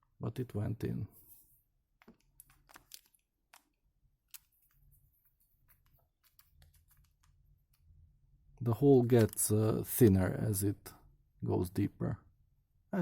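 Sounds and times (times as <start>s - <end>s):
small plastic parts clicking: 2.0s - 4.9s, 5.6s - 7.9s, 9.1s - 9.6s.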